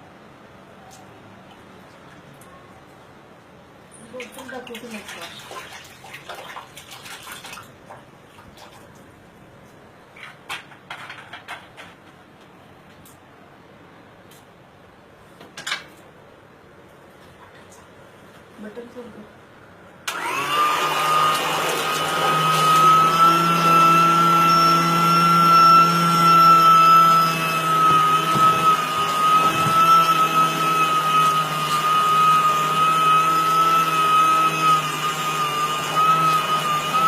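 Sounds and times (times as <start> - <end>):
washing machine motor whining: 20.1 - 37.0.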